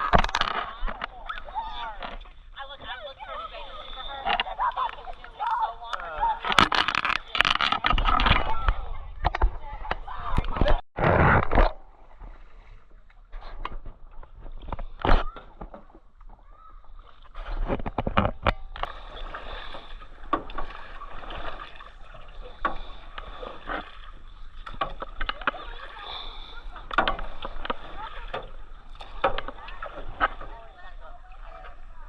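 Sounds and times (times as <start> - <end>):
water splashing around boat: 0.0 - 32.0
sharp knocks and clicks: 26.9 - 29.6.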